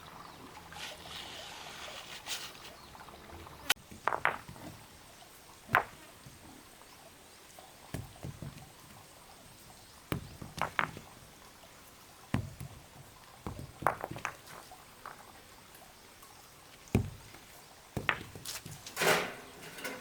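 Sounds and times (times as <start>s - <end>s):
short scrapes: 0.7s - 2.8s
knocks and thuds: 3.8s - 4.9s, 5.7s - 6.5s, 7.9s - 9.1s, 10.0s - 11.3s, 12.3s - 15.2s, 16.8s - 19.4s.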